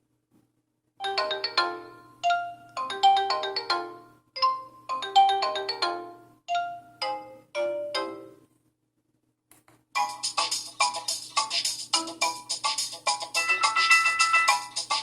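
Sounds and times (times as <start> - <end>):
phone ringtone melody: 1.0 - 8.4, 13.2 - 15.0.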